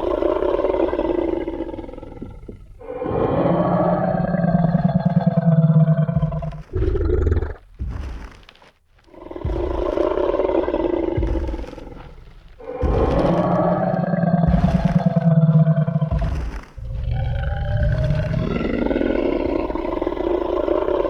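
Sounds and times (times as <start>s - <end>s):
deep dinosaur roar: 0.0s - 8.3s, 9.1s - 21.0s
dinosaur grunt: 0.0s - 8.3s, 9.2s - 21.0s.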